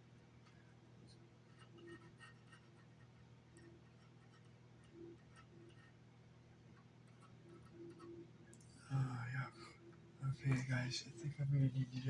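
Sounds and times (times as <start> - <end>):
steady low hum: 0.0 - 12.0
small ticks and scrapes: 0.4 - 6.1, 6.7 - 8.7.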